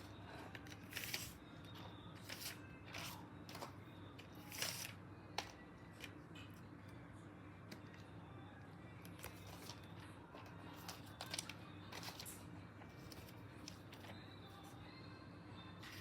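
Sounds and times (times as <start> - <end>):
low steady hum: 0.0 - 16.0
packaging rustling and clicking: 10.7 - 12.4.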